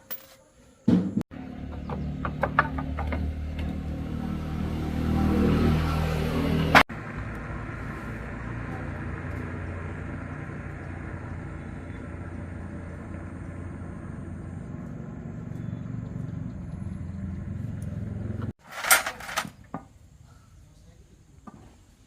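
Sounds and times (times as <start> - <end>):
motorcycle engine running: 1.3 - 5.5, 6.4 - 18.6.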